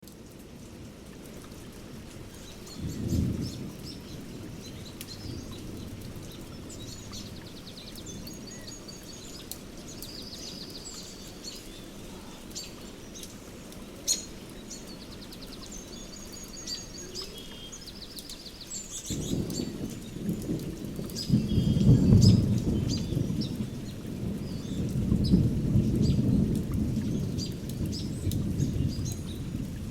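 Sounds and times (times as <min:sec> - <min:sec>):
steady rain: 0:00.0 - 0:29.9
songbirds chirping and trilling: 0:01.5 - 0:29.9
thunder rumbling: 0:02.3 - 0:08.7, 0:19.0 - 0:29.9.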